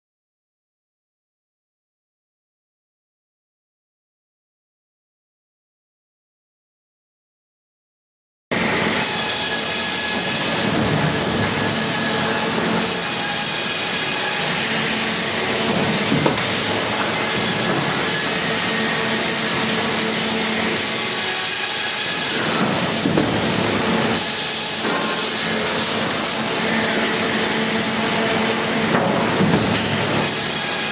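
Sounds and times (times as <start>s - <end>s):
machinery humming: 8.5s - 30.9s
sharp knocks: 15.6s - 18.1s, 22.6s - 23.5s.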